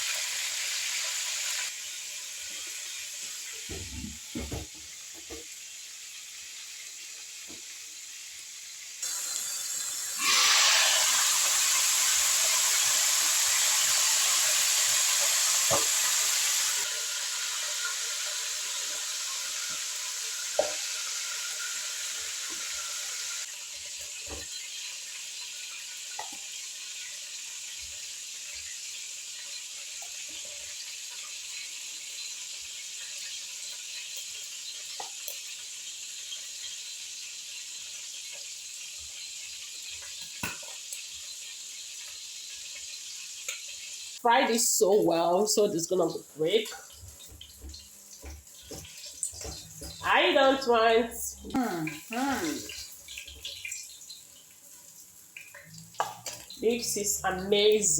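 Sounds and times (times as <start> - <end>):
fish sizzling in hot oil: 0.0 - 57.9.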